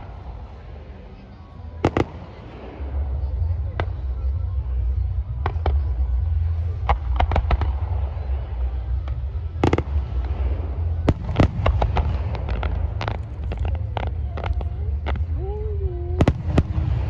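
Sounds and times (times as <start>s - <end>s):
sharp crackling pops: 11.1s - 15.2s.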